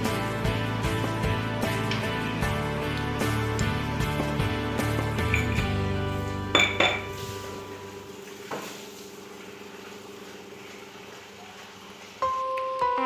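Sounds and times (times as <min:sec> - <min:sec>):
background music: 0:00.0 - 0:08.0.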